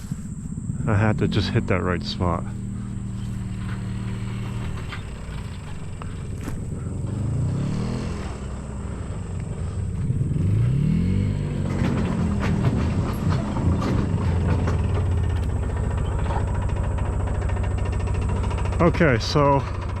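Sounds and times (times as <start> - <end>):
farm vehicle engine revving: 0.0 - 20.0
rattling: 2.4 - 8.4.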